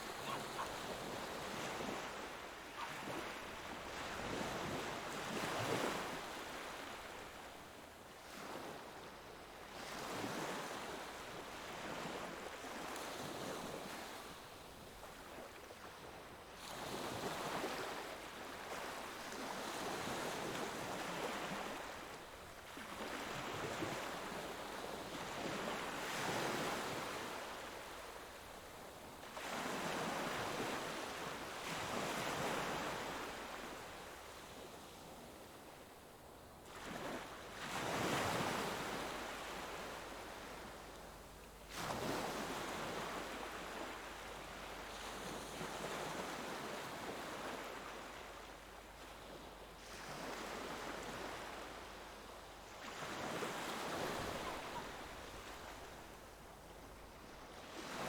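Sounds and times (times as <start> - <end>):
ocean waves breaking: 0.0 - 6.0.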